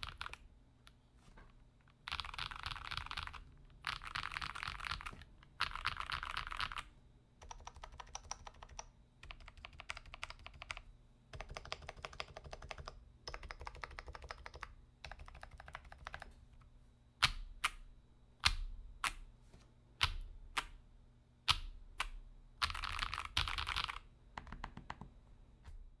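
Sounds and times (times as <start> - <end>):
mechanical keyboard typing: 0.0 - 0.4, 2.0 - 16.3, 21.5 - 25.1.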